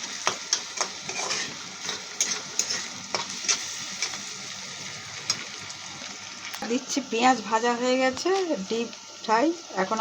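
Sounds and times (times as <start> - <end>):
spatula scraping a pan: 0.0 - 4.2
onions sizzling in oil: 0.0 - 10.0.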